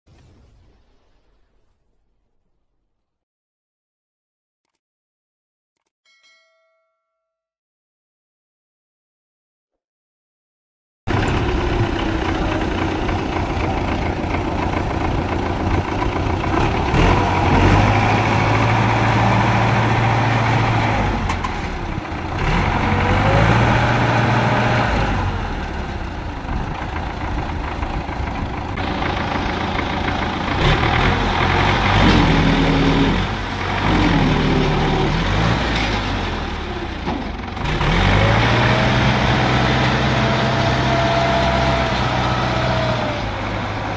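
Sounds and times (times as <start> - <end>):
tractor engines revving under load: 11.1 - 43.9.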